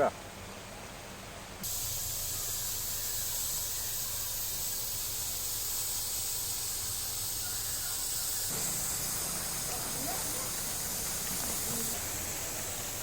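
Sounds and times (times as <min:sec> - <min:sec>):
steady high hiss: 0:00.0 - 0:13.0.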